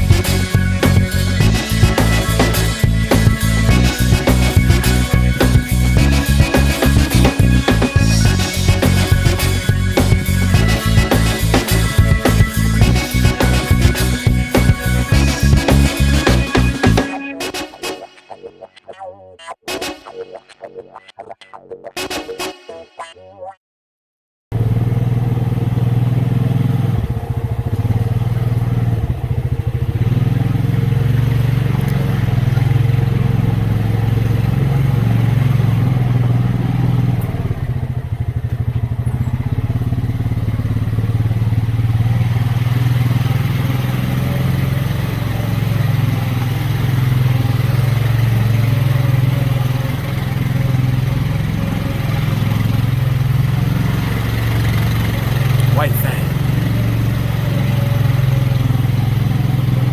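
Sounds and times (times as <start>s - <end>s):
atv engine running: 0.0s - 17.1s, 24.5s - 59.9s.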